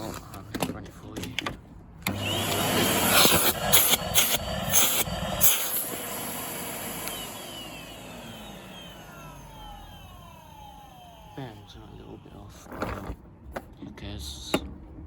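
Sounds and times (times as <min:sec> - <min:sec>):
vacuum cleaner spinning down: 0:02.1 - 0:12.4.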